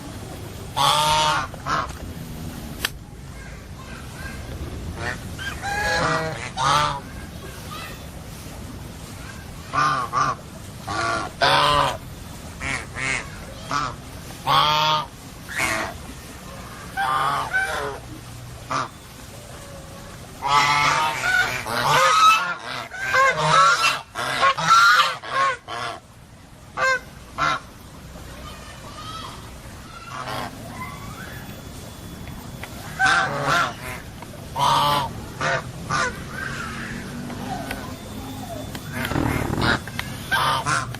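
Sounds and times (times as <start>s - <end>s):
geese honking: 0.8s - 2.0s, 5.0s - 7.1s, 9.7s - 12.0s, 12.6s - 16.0s, 16.9s - 26.1s, 26.8s - 27.6s, 30.0s - 31.4s, 32.7s - 40.9s.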